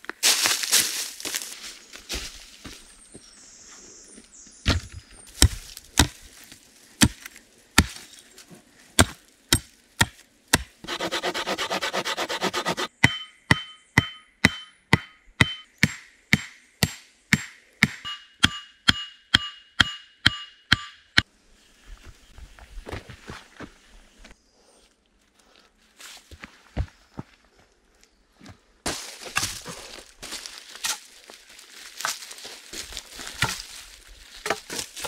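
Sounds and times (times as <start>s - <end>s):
quick rasping strokes: 10.8s - 12.9s.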